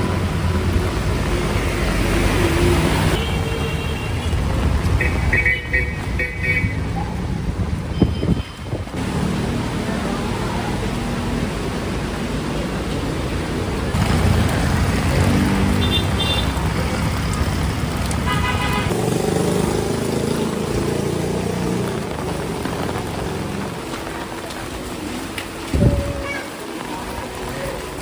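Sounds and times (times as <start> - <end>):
road traffic hiss: 8.6 - 28.0
car horn toot: 18.3 - 18.9.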